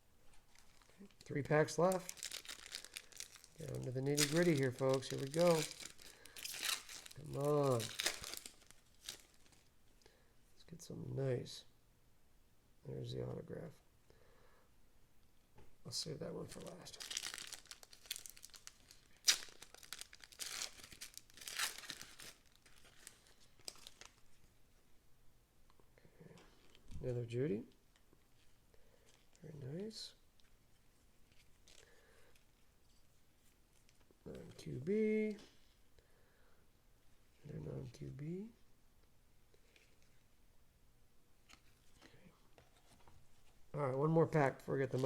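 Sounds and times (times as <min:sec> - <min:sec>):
wrapper crinkling and tearing: 0:00.5 - 0:09.7, 0:16.5 - 0:24.5.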